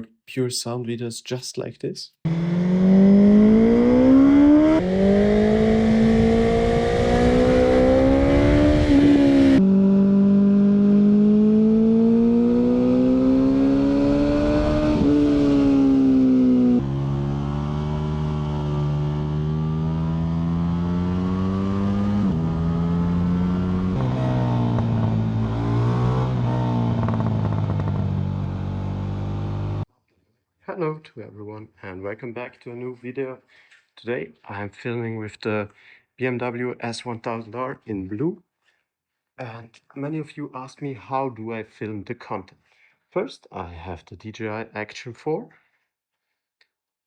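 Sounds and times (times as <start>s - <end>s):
motorcycle engine accelerating: 2.3s - 29.8s.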